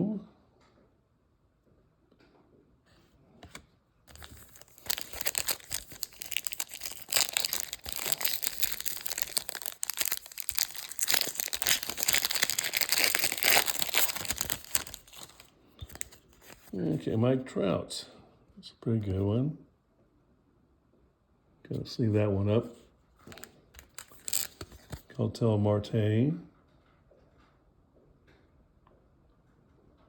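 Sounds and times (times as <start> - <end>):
foil wrapper tearing and crinkling: 4.1 - 16.7, 23.3 - 25.1.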